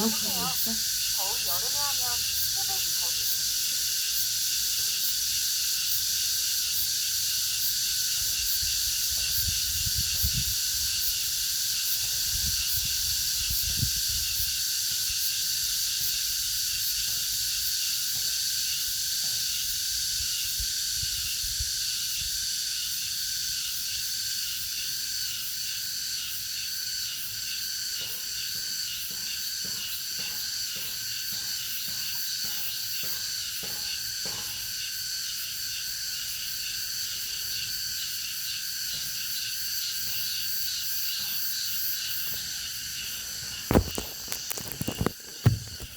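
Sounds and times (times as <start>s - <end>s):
cicadas buzzing: 0.0s - 45.9s
pulsing insect call: 0.0s - 45.9s.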